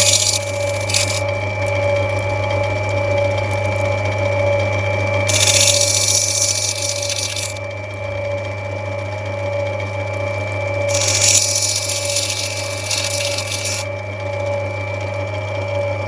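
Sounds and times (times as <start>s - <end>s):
stone grinding hiss: 0.0s - 1.2s, 5.3s - 7.6s, 10.9s - 13.9s
machine motor humming: 0.0s - 1.3s, 5.3s - 7.6s, 10.9s - 14.0s.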